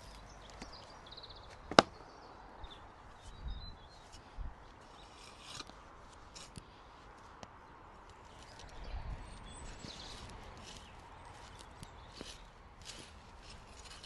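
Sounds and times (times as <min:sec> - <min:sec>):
digging tool striking soil: 0:01.7 - 0:02.0.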